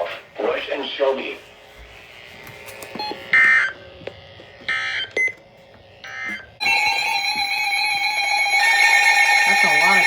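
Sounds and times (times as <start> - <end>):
digital data bursts: 8.0 - 10.0.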